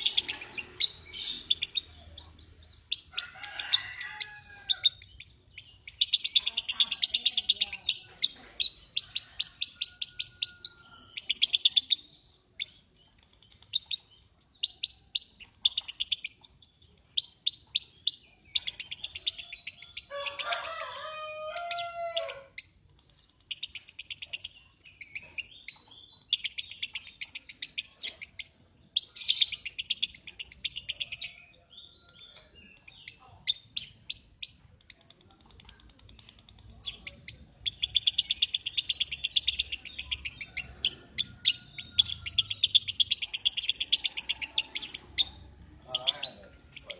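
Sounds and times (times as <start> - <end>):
bird chattering in buzzy trills: 0.0 - 20.9, 21.6 - 46.9.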